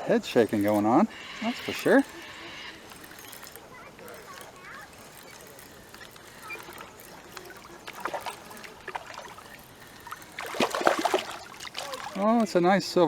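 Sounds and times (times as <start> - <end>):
water splashing and trickling: 0.0 - 13.0.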